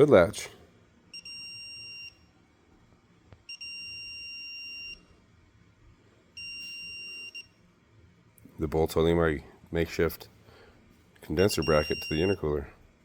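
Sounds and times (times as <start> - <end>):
torque wrench beeping: 6.4 - 7.5, 11.4 - 12.4.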